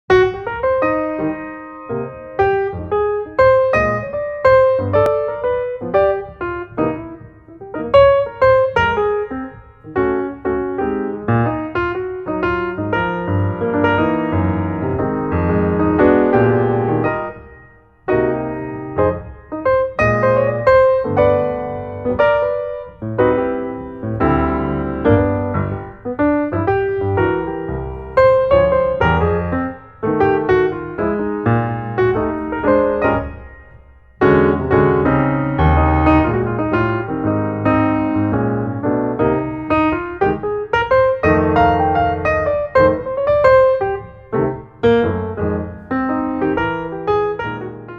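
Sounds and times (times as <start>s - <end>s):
piano music: 0.1s - 47.9s.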